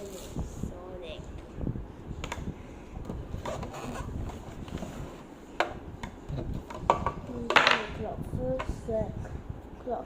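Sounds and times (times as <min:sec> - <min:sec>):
rubbing and shuffling of packaging: 0:00.0 - 0:00.8.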